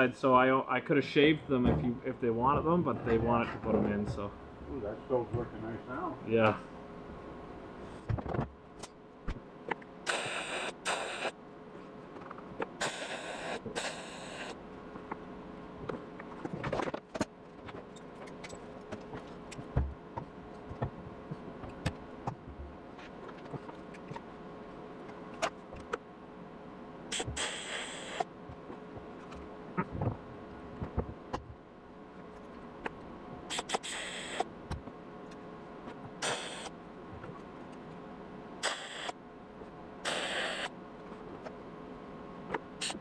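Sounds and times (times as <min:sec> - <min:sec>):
steady hum: 0:00.0 - 0:43.0
welding bursts: 0:10.1 - 0:11.4, 0:12.8 - 0:14.6, 0:27.1 - 0:28.3, 0:33.5 - 0:34.5, 0:36.2 - 0:36.8, 0:38.6 - 0:39.2, 0:40.1 - 0:40.8.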